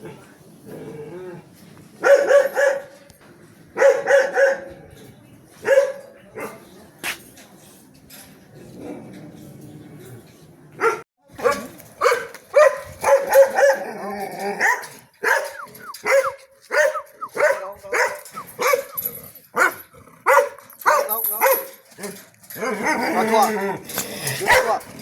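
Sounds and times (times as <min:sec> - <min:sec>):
dog barking: 0:02.0 - 0:03.0, 0:03.8 - 0:04.8, 0:05.6 - 0:06.6, 0:10.8 - 0:13.9, 0:14.6 - 0:19.0, 0:19.6 - 0:21.6, 0:24.4 - 0:24.8.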